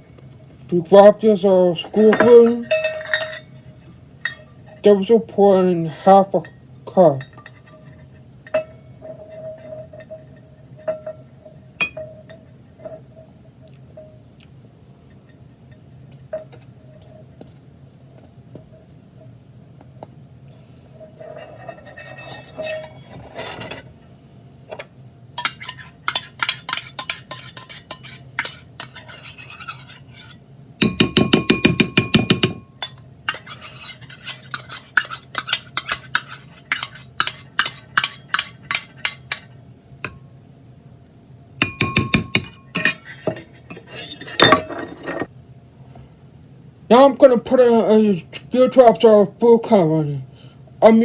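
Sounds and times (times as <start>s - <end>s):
metal spoon stirring in container: 21.0s - 23.8s, 25.4s - 39.6s, 41.6s - 45.3s.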